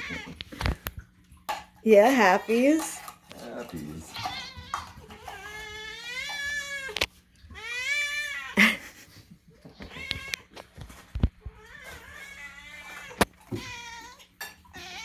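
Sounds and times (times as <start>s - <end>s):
cats meowing: 0.0s - 0.8s, 3.8s - 8.6s, 9.6s - 10.7s, 11.4s - 15.0s.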